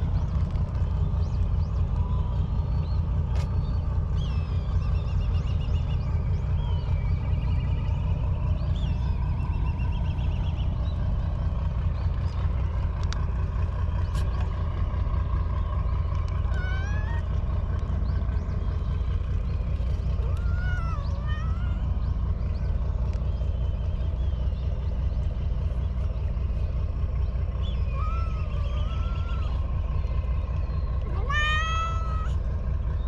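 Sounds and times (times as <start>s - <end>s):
steady low rumble: 0.0s - 33.0s
cat meowing: 16.4s - 17.3s, 20.2s - 22.0s, 27.9s - 29.6s, 31.0s - 32.4s.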